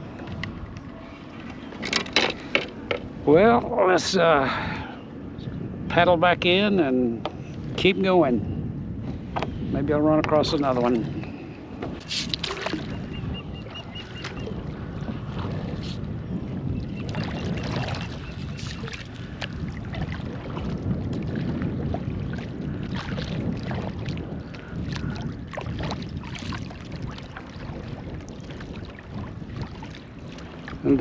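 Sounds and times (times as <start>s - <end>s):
wind rumble on microphone: 0.0s - 31.0s
kayak paddle splashing: 11.8s - 16.0s, 17.0s - 31.0s.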